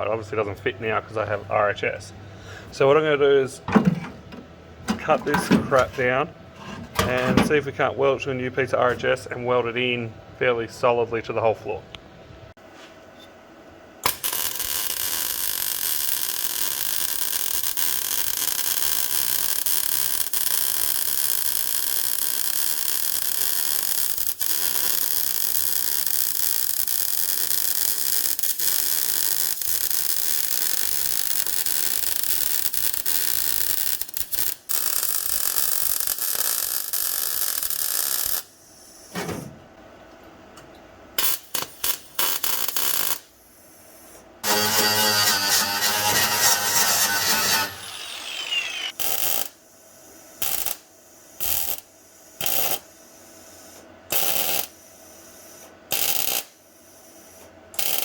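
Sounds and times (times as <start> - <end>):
angle grinder cutting steel: 44.4 - 49.2.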